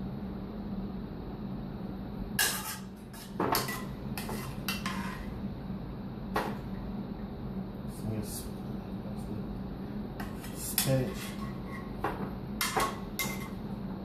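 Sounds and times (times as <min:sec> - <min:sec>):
steady low hum: 0:00.0 - 0:14.0
dishes and utensils clinking: 0:10.2 - 0:13.6.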